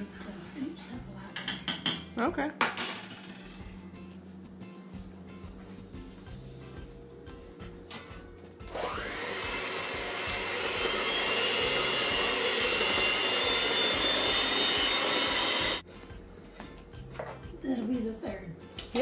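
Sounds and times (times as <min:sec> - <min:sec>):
kitchen appliance motor whining: 0:08.6 - 0:15.8.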